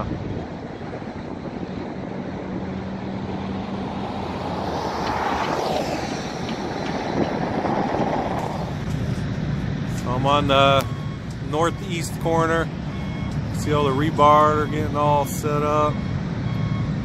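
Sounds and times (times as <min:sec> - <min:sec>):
wind buffeting microphone: 0:00.0 - 0:14.7
traffic noise: 0:00.0 - 0:17.0
vehicle passing: 0:00.0 - 0:17.0.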